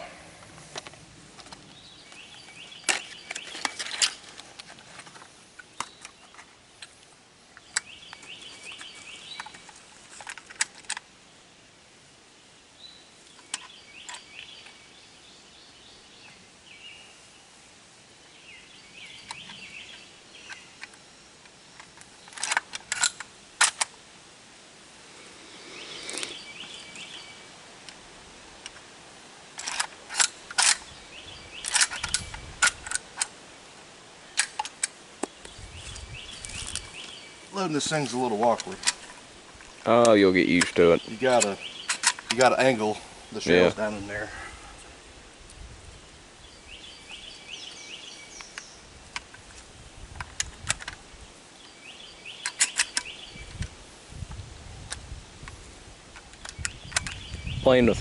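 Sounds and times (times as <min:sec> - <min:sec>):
bird chirping: 0:01.6 - 0:04.3, 0:07.5 - 0:09.8, 0:12.8 - 0:17.4, 0:18.2 - 0:20.9, 0:25.1 - 0:27.6, 0:30.2 - 0:33.2, 0:35.2 - 0:39.2, 0:39.9 - 0:44.6, 0:46.0 - 0:48.9, 0:51.5 - 0:53.6, 0:56.3 - 0:58.0
shotgun shells loading clicks: 0:21.8 - 0:23.9, 0:29.6 - 0:30.9, 0:31.6 - 0:33.3, 0:34.3 - 0:35.0, 0:41.4 - 0:42.5, 0:52.4 - 0:53.1
shells loaded into shotgun clicking: 0:29.6 - 0:30.8.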